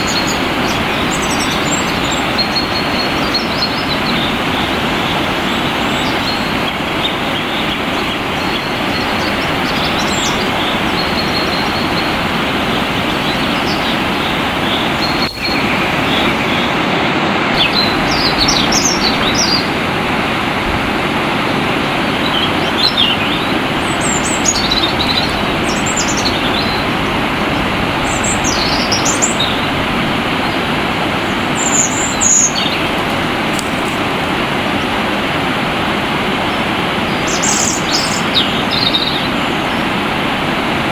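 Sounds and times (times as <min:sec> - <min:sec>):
songbirds chirping: 0:00.0 - 0:16.9, 0:17.5 - 0:40.9
water rushing: 0:00.0 - 0:40.9.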